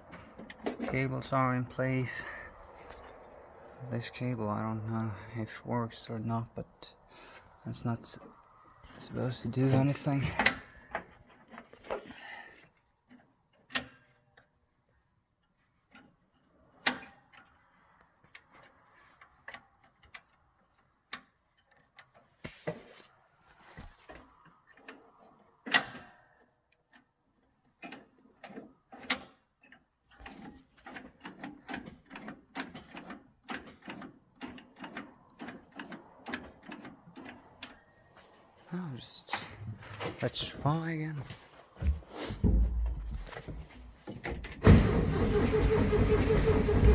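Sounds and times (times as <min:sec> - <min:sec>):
clicks and knocks of hand work: 0:15.4 - 0:38.3.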